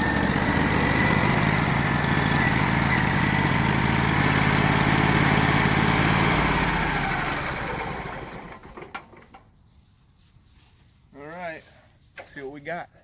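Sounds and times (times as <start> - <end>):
sawmill engine running: 0.0 - 9.4.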